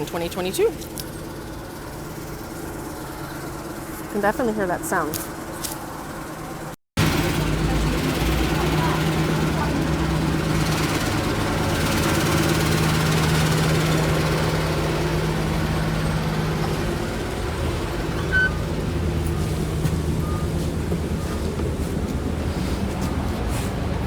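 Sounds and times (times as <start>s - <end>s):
bus engine idling: 0.0s - 24.0s
bus body rattling: 4.9s - 24.0s
short high beep: 18.2s - 18.6s.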